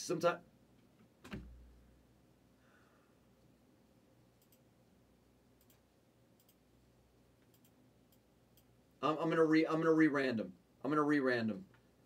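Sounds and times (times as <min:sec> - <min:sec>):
computer mouse clicks: 0:04.4 - 0:04.7, 0:05.6 - 0:06.6, 0:07.4 - 0:08.7.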